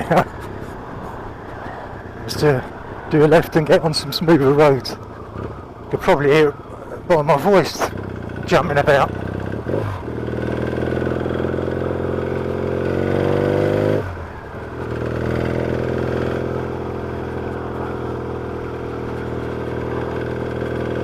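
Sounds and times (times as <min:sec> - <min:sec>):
motorcycle engine running: 0:04.8 - 0:21.0.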